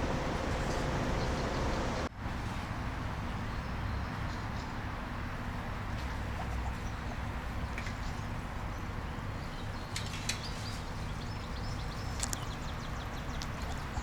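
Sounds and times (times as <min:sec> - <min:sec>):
low rumble: 0:00.0 - 0:02.1.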